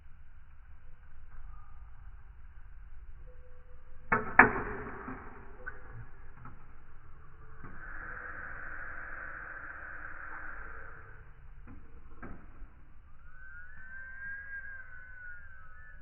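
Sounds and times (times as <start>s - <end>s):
steady hissing rush: 6.8s - 16.0s.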